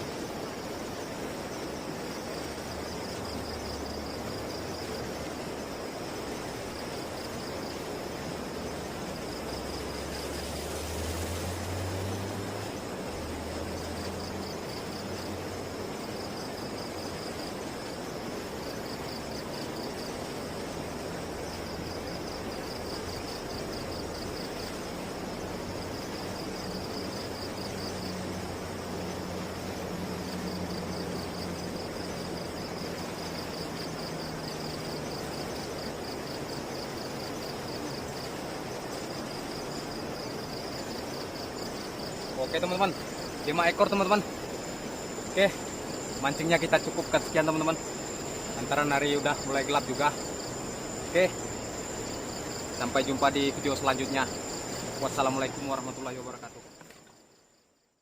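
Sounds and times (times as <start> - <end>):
river rushing: 0.0 - 57.4
insects chirping: 0.0 - 58.0.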